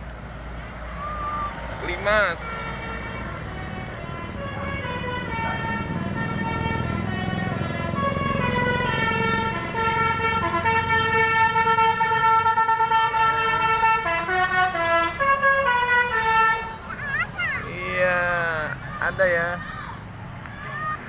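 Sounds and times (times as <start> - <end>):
bus engine rumble: 0.0 - 21.0
bus musical horn: 1.2 - 17.0.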